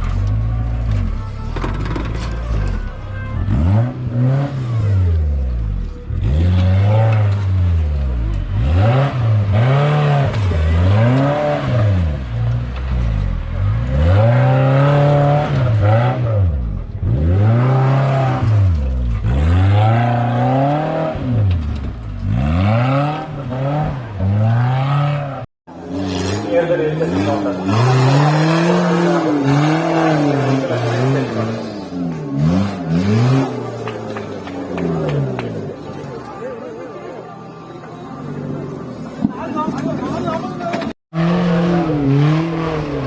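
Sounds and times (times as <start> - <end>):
engine revving hard: 6.1 - 12.8, 13.5 - 21.6, 22.2 - 36.4, 41.1 - 43.0.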